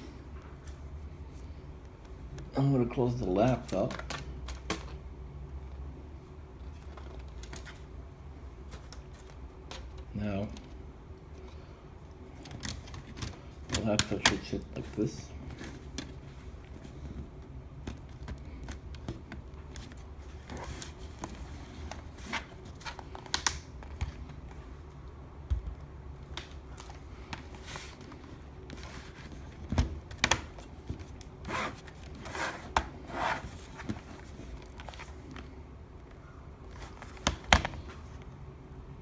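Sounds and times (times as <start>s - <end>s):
plastic scraping rubs: 30.9s - 35.2s.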